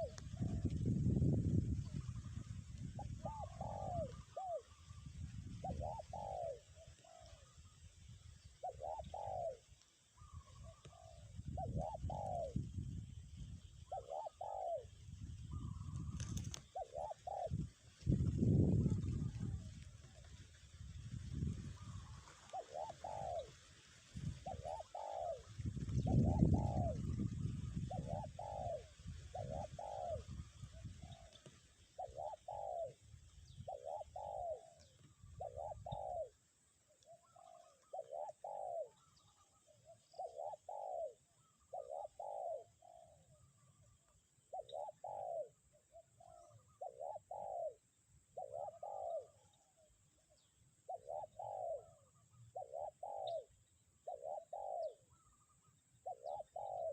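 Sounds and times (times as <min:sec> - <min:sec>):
dove cooing: 0:00.0 - 0:00.9, 0:01.8 - 0:12.7, 0:13.8 - 0:56.9
wind rumble on microphone: 0:00.0 - 0:09.6, 0:10.2 - 0:36.3.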